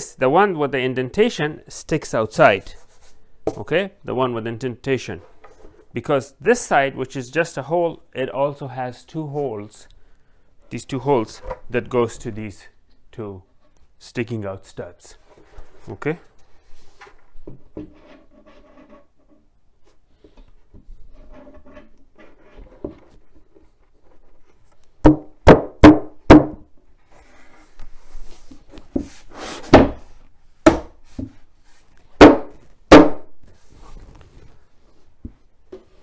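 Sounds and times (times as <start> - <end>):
rubbing and handling of panels: 15.2 - 25.1
wood knocking on wood: 25.0 - 26.7, 29.7 - 30.0, 30.6 - 31.4, 32.2 - 33.3.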